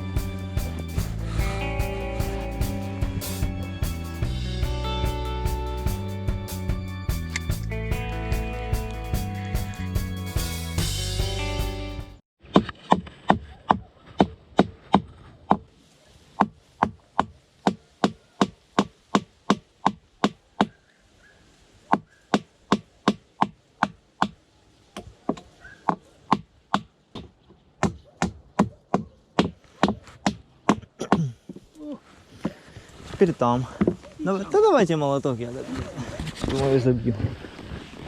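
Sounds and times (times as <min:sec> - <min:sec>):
hammer striking wood: 0:25.3 - 0:31.2.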